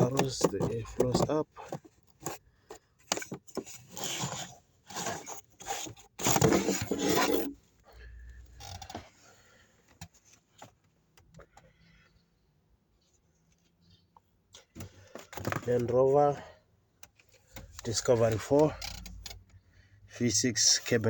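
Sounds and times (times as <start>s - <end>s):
plastic rattling and rubbing: 0.0s - 7.6s, 14.7s - 16.4s.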